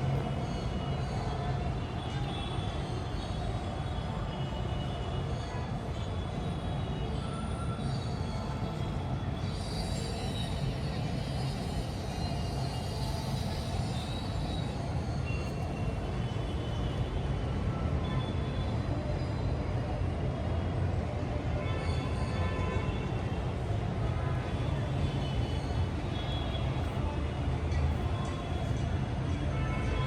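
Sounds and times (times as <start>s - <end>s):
city ambience rumble: 0.0s - 30.0s.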